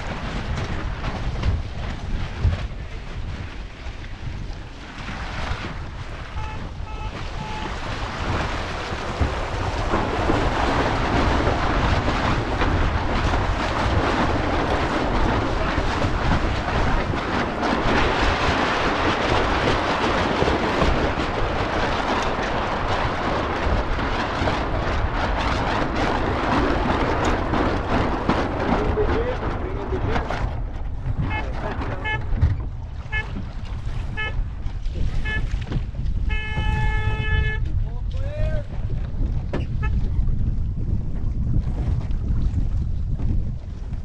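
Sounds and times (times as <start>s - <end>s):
water rushing along hull: 0.0s - 44.0s
wind buffeting microphone: 0.0s - 44.0s.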